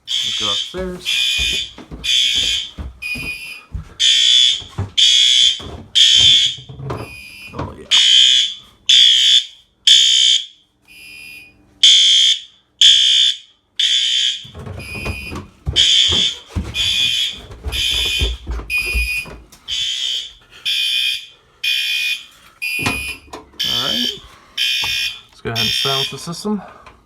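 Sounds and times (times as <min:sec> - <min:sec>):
fire alarm horn blasts: 0:00.0 - 0:26.4
low thumps and knocks: 0:00.9 - 0:05.0, 0:14.6 - 0:19.5.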